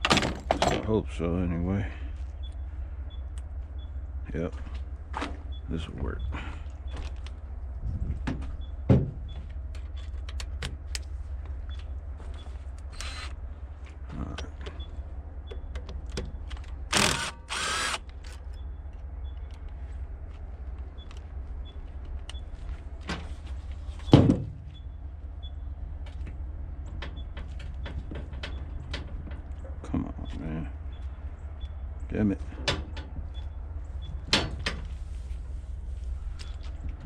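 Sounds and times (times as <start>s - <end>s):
low rumble: 1.0s - 9.8s
power tool bursts: 13.0s - 13.3s, 16.9s - 18.0s.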